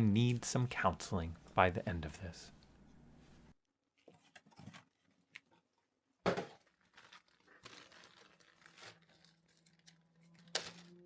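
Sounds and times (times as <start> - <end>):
packaging crinkling and clicking: 6.6 - 11.0.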